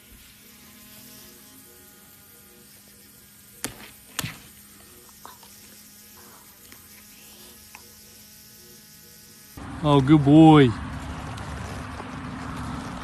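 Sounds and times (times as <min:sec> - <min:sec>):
electrical hum: 0:00.0 - 0:13.0.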